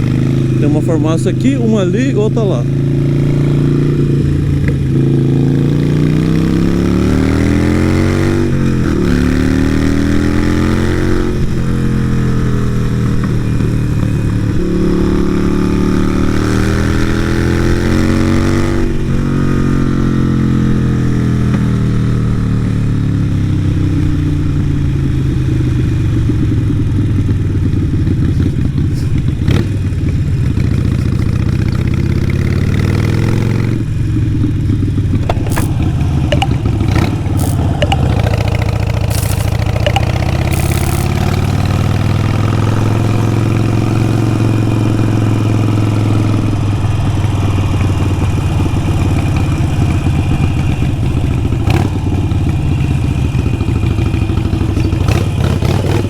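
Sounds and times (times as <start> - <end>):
motorcycle engine accelerating: 0.0 - 56.0
sharp click: 35.3 - 41.2.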